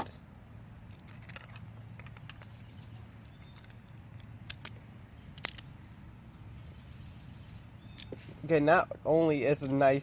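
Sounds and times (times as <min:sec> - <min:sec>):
faint outdoor hum: 0:00.0 - 0:10.0
bird chirps: 0:02.0 - 0:04.3, 0:05.1 - 0:08.5.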